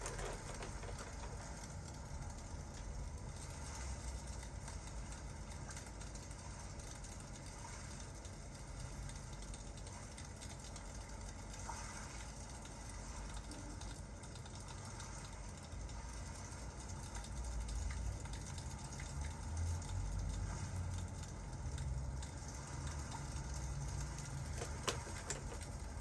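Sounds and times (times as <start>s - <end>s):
fire crackling and popping: 0.0s - 3.3s
rain hissing: 0.0s - 4.2s.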